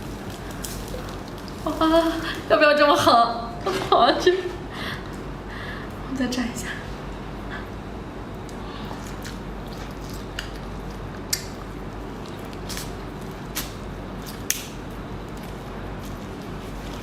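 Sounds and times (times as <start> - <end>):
wet eating squishing and sucking: 8.4 - 17.0.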